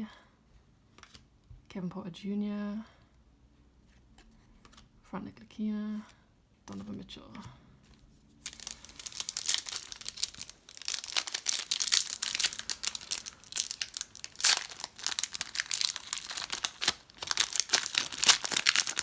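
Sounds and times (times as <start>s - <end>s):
plastic wrapper crinkling and tearing: 8.4s - 19.0s.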